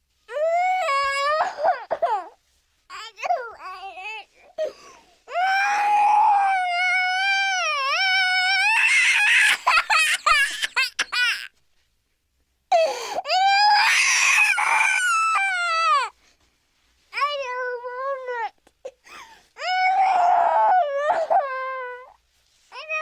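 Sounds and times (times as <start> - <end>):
person crying and sobbing: 4.5 - 11.5.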